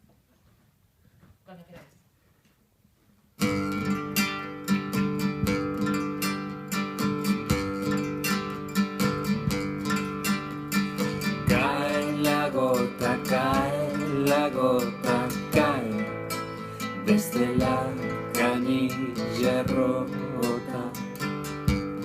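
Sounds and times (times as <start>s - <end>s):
acoustic guitar strumming: 3.4s - 22.0s
person singing: 10.9s - 21.4s.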